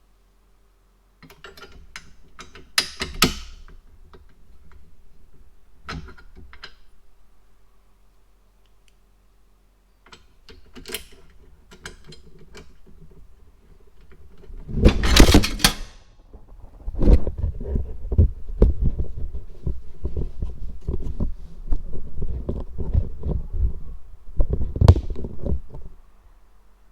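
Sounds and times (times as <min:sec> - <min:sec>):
low knocks and thumps: 0:16.3 - 0:25.9.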